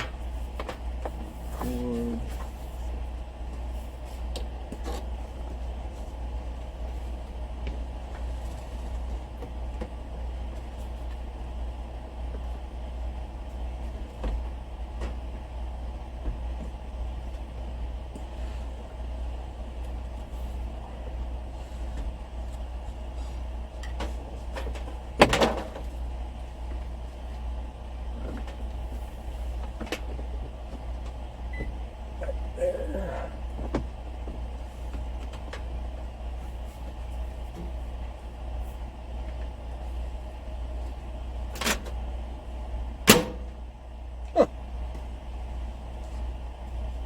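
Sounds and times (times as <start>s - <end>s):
steady low hum: 0.0s - 47.0s.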